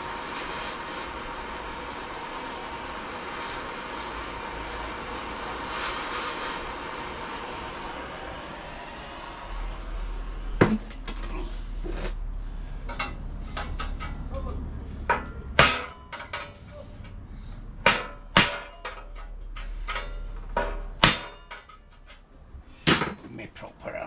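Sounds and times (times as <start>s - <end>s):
hammer striking sheet metal: 15.1s - 16.7s, 17.8s - 22.2s, 22.9s - 23.3s.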